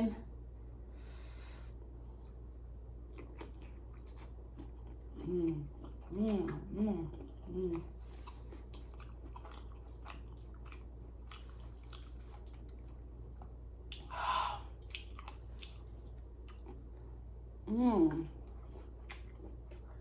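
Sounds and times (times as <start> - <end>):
close chewing: 3.1 - 13.0, 14.8 - 16.8, 18.4 - 20.0.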